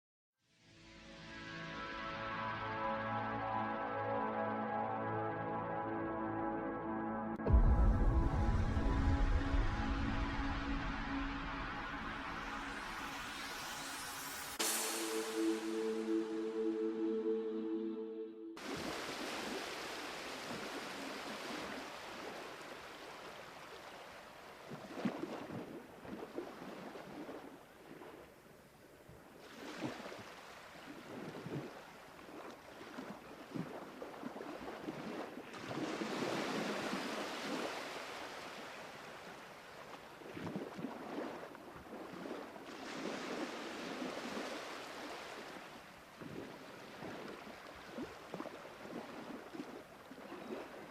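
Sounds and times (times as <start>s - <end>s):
sea waves washing: 7.5s - 18.0s, 18.6s - 23.9s, 29.4s - 50.9s
small water splashes: 18.6s - 28.3s, 29.4s - 50.9s.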